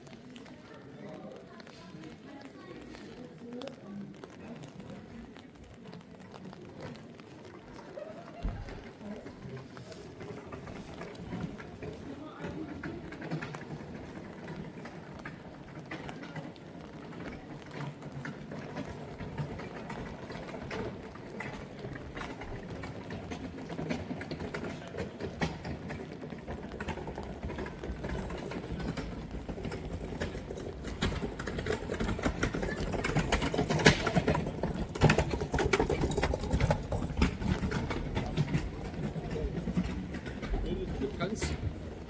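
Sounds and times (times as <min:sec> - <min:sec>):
footsteps on wet street: 0:00.0 - 0:42.0
rain on wet street: 0:00.0 - 0:42.0
rapid small clicks and taps: 0:08.4 - 0:41.6.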